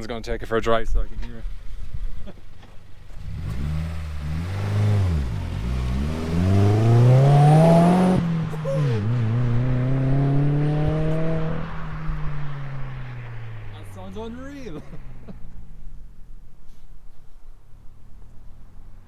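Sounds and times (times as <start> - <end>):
car engine revving: 1.3 - 16.5.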